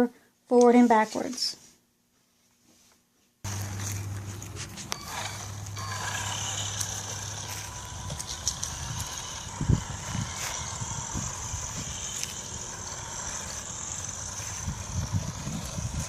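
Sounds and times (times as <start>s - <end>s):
toy electric motor whining: 3.5s - 16.0s.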